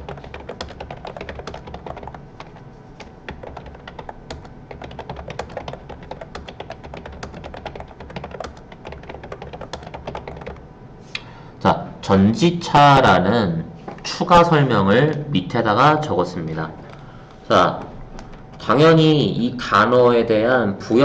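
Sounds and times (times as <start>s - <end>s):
computer keyboard typing: 0.0s - 10.6s.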